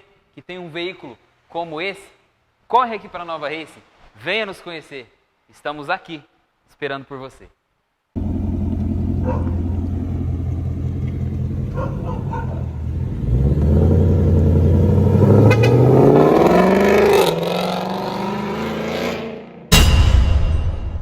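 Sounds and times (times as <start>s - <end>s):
car engine idling and revving: 8.2s - 19.1s.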